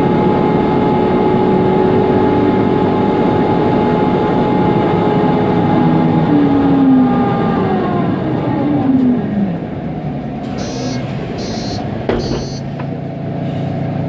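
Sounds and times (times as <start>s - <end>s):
bus engine drone: 0.0s - 14.0s
high electronic beeps: 10.6s - 12.7s.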